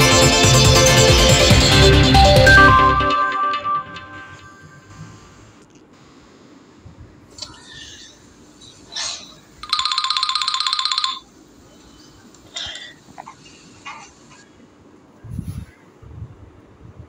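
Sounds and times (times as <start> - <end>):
trill of high beeps: 2.1 - 4.8.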